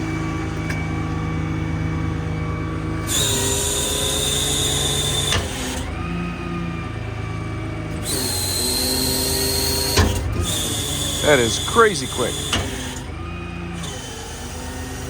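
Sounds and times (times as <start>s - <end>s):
diesel engine running: 0.0s - 15.0s
high hydraulic whine: 0.0s - 15.0s.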